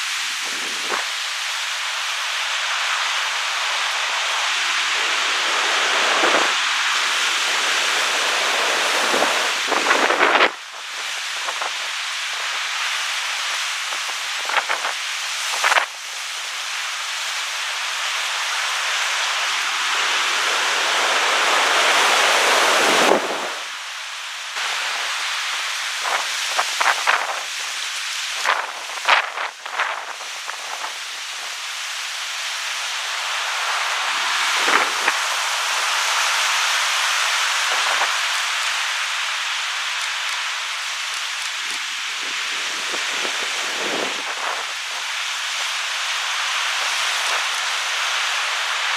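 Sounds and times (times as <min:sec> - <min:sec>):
ocean waves breaking: 0:00.4 - 0:15.9, 0:18.2 - 0:23.7, 0:24.6 - 0:31.8.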